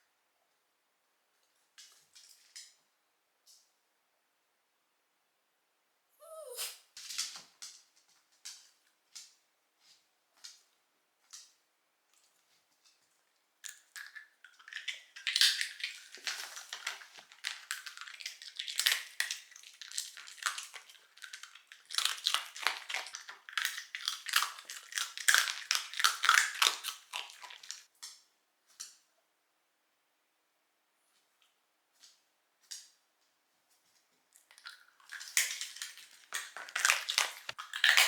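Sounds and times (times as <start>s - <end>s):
dog crunching hard treat: 13.7s - 27.9s, 34.5s - 38.0s.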